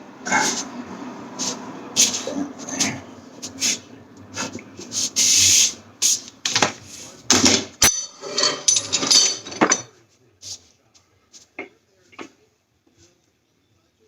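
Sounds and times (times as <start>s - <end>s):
metal tools clicking and scraping: 7.8s - 9.9s.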